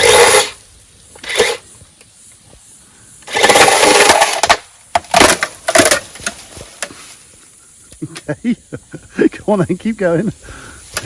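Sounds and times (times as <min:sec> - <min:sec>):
electric chainsaw cutting bamboo: 0:00.0 - 0:00.6, 0:01.2 - 0:01.7, 0:03.2 - 0:06.4
bamboo cracking: 0:03.2 - 0:08.3, 0:10.7 - 0:11.0.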